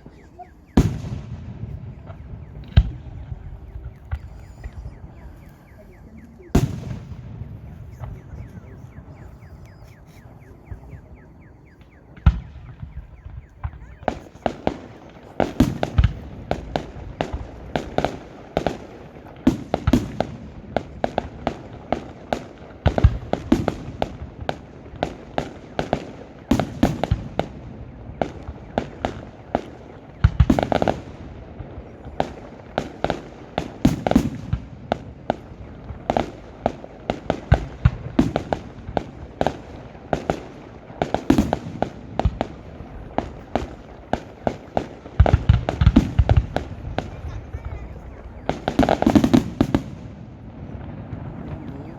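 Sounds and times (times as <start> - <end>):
fireworks bangs and cracks: 0.0 - 51.9
fireworks booms: 0.0 - 51.9.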